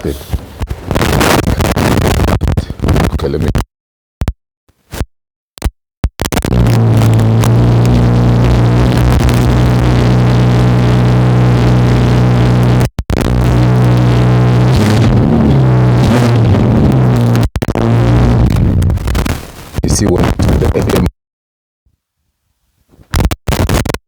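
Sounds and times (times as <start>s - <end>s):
car engine running: 6.5s - 19.2s.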